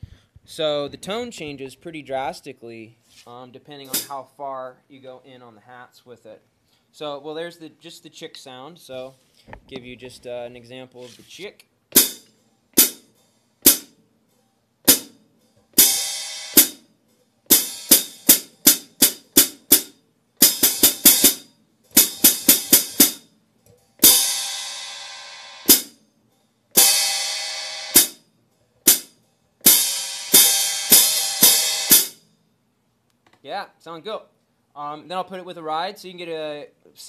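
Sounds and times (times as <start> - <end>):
closed hi-hat strokes: 3.1 - 4.3, 10.0 - 14.0, 14.9 - 16.9, 17.5 - 26.0, 26.8 - 28.2, 28.8 - 32.3.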